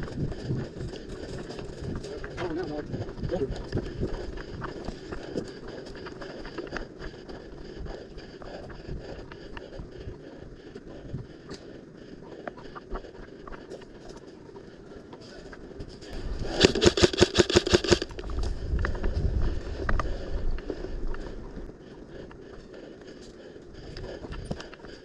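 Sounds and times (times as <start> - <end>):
airsoft gun full-auto burst: 16.5 - 18.1.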